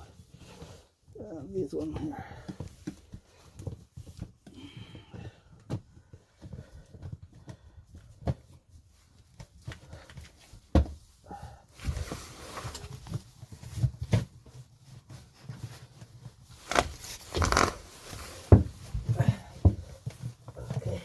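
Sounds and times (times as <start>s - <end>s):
rubbing and scraping: 14.7s - 21.0s.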